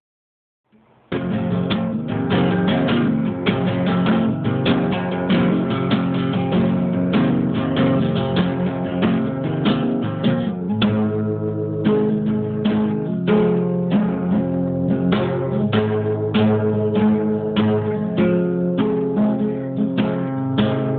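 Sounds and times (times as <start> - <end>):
guitar plucked notes: 0.7 - 20.9.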